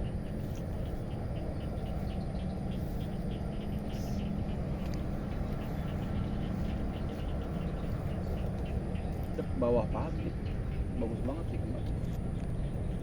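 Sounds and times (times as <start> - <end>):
insect or frog chirping: 0.0 - 13.0
low outdoor rumble: 0.0 - 13.0.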